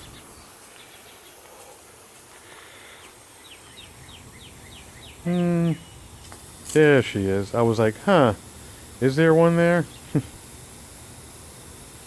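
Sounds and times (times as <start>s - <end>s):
bird chirping: 0.0s - 1.7s, 2.8s - 10.8s
man humming: 5.2s - 5.9s.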